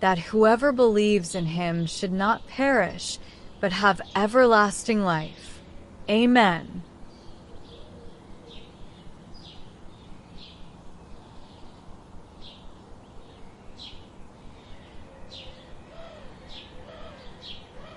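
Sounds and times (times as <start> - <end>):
birds chirping: 0.0 - 17.9
low background hiss: 0.0 - 17.9
low wavering bird call: 14.6 - 17.9.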